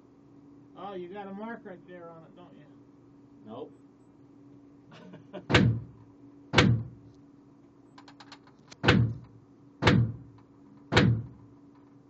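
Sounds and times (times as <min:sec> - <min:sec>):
gatling gun shots: 0:05.5 - 0:05.9, 0:06.6 - 0:07.0.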